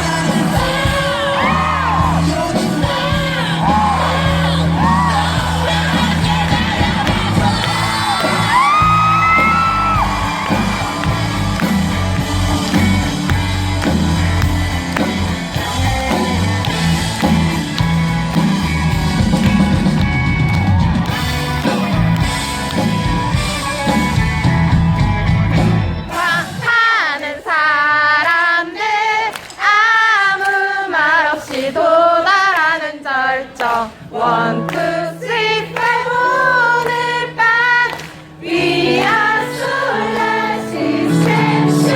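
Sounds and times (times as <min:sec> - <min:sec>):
person singing: 0:00.0 - 0:11.8
bass: 0:00.0 - 0:26.6, 0:36.8 - 0:41.9
pop-rock band playing: 0:00.0 - 0:26.6, 0:34.2 - 0:41.9
drums: 0:00.0 - 0:27.4.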